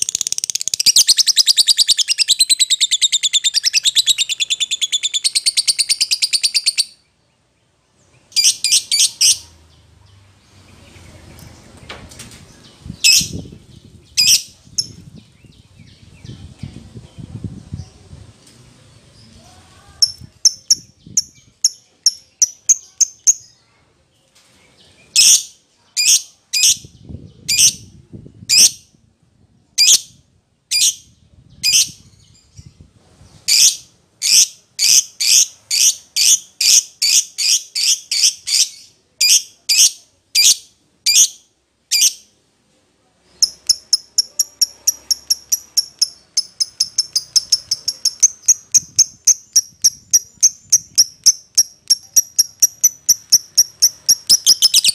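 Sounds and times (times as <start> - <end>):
lovebird chirping: 0.0 - 7.2, 8.1 - 11.6, 12.5 - 16.5, 20.0 - 23.6, 33.4 - 42.3, 43.3 - 54.9.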